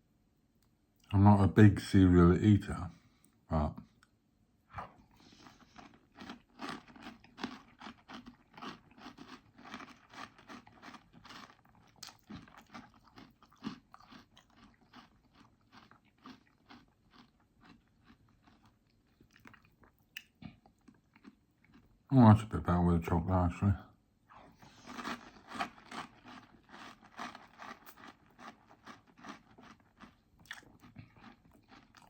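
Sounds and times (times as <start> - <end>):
person chewing crunchy cereal: 4.8 - 22.1, 24.3 - 32.0.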